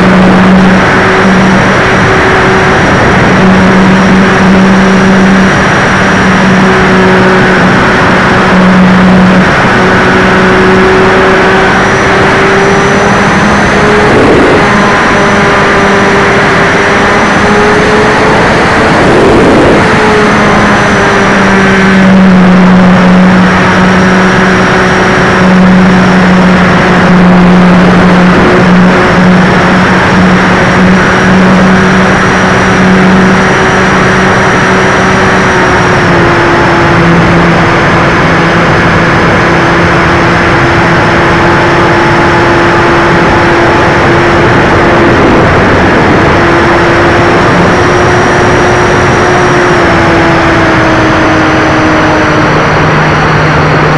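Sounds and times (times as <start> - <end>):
model plane motor drone: 0.0 - 53.9
wind rushing: 0.0 - 53.9.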